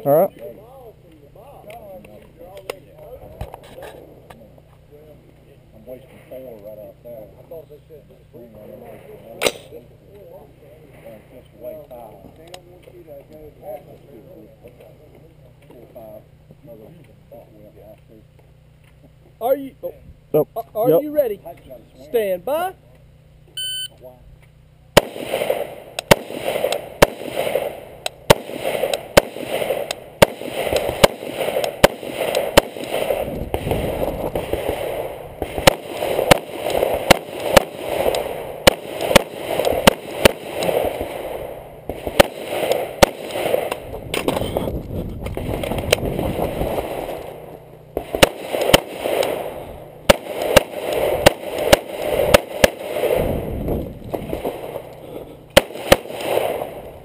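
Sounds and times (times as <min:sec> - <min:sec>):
rifle shots: 0:08.8 - 0:09.8, 0:25.0 - 0:44.7, 0:45.3 - 0:57.0.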